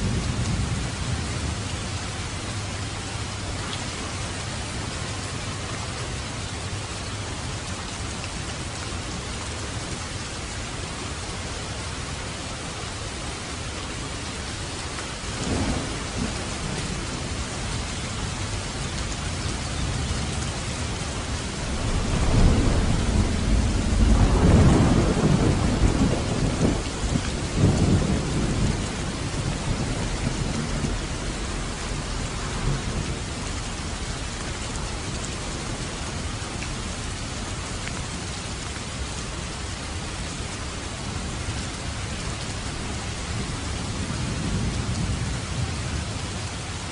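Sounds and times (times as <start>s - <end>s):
steady rain: 0.0s - 46.9s
thunder rumbling: 15.2s - 37.0s, 42.7s - 46.3s.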